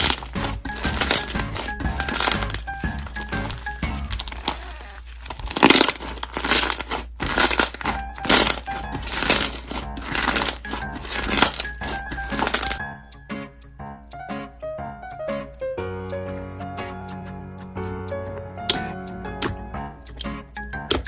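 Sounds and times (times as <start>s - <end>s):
light background music: 0.0s - 4.5s, 5.5s - 21.0s
slime squishing by hand: 0.0s - 12.8s.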